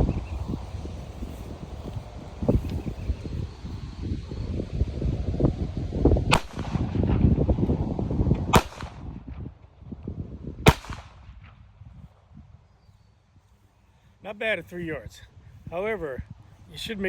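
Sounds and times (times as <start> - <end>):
pistol shots: 6.3 - 6.9, 8.5 - 9.0, 10.7 - 11.5.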